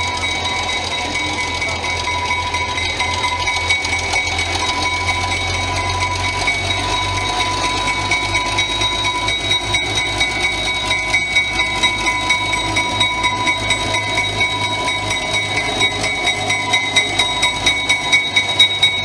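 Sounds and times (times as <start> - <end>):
high whine: 0.0 - 19.0
train rumbling: 0.0 - 19.0.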